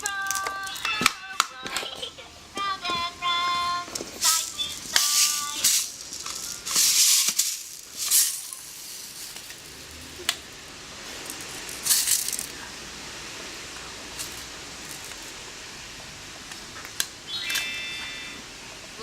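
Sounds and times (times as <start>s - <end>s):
alarm clock electronic tune: 17.3s - 18.4s.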